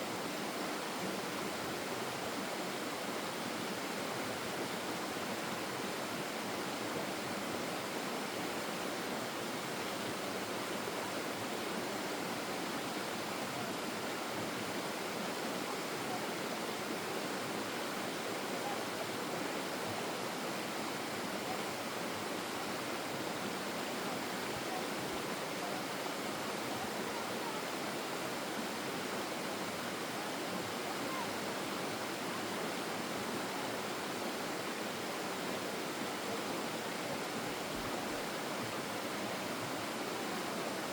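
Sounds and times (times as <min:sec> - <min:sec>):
stream flowing: 0:00.0 - 0:40.9.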